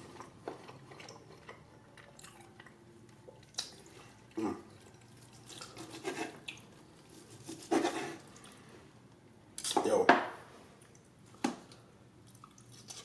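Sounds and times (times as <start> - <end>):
close chewing with mouth smacks: 0.0 - 7.6, 12.2 - 13.0.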